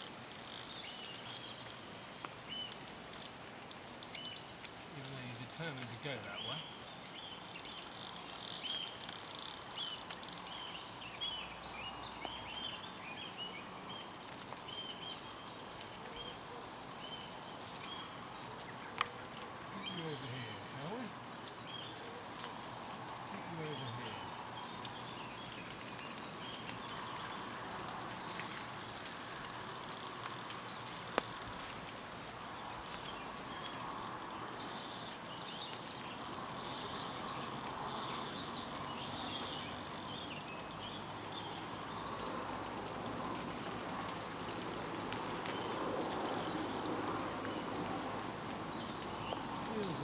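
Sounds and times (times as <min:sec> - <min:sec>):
fishing reel ratcheting: 0:00.0 - 0:01.4, 0:03.1 - 0:03.3, 0:05.0 - 0:06.3, 0:07.4 - 0:10.8, 0:27.6 - 0:33.0, 0:33.6 - 0:41.0, 0:46.1 - 0:47.0.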